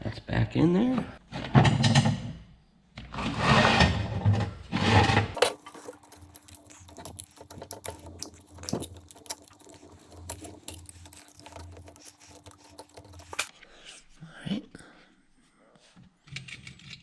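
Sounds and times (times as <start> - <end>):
rustling and scraping: 5.4 - 13.5
small parts clicking: 5.4 - 13.5.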